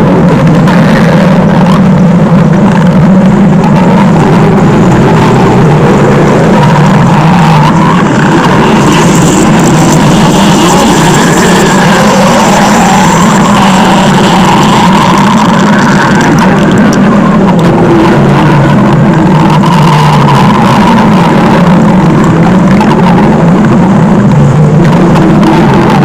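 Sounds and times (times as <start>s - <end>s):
cartoon stomach growl: 0.0s - 26.0s.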